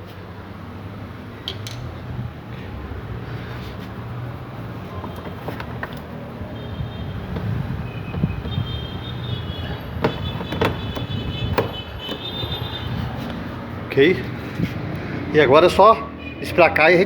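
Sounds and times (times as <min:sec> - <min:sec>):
plastic trim panel clicks: 0:09.9 - 0:12.4.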